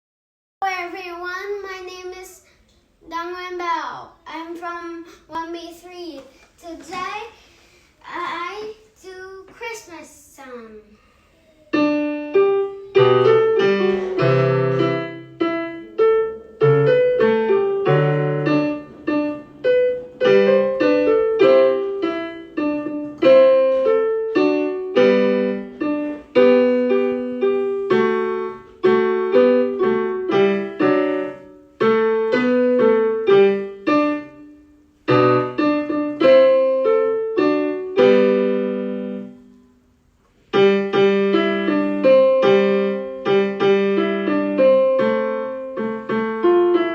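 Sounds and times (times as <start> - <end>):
christmas song on piano: 11.5 - 46.9.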